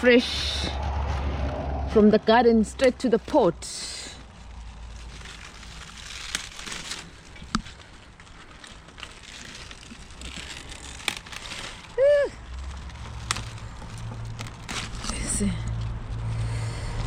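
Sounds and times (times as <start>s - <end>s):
leaves rustling and snapping: 2.7s - 16.3s.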